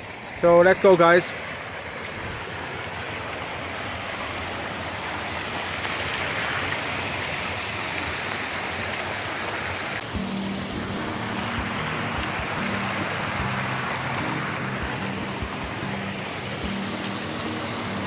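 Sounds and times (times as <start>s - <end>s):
stream and waterfall rushing: 0.0s - 18.0s.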